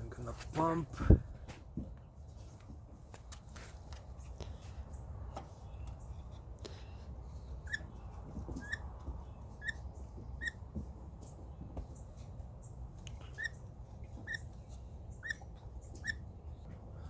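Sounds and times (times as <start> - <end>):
fuel primer pump clicking and squeaking: 7.6 - 10.6.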